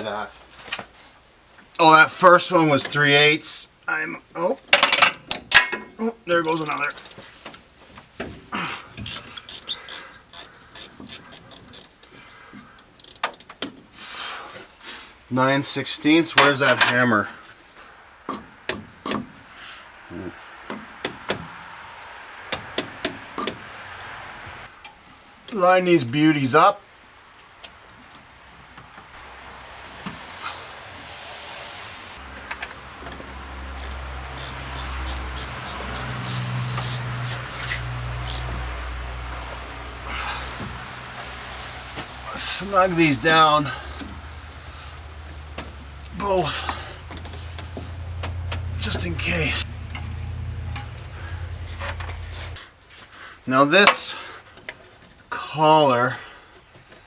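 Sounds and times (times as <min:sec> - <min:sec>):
ratchet wrench clicking: 0:06.4 - 0:07.3, 0:08.6 - 0:12.2, 0:12.8 - 0:13.6, 0:33.7 - 0:37.1, 0:38.2 - 0:38.6, 0:40.1 - 0:40.6
low steady hum: 0:37.9 - 0:52.6
metal tools clinking: 0:48.6 - 0:52.5.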